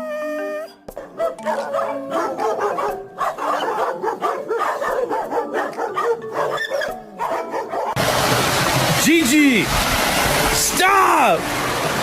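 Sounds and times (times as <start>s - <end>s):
light background music: 0.0s - 8.0s
dog barking and yipping: 0.7s - 8.0s.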